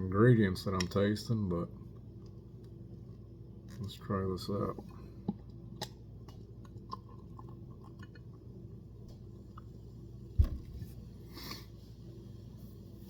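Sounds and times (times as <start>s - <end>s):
dull thump on table: 10.4s - 10.8s.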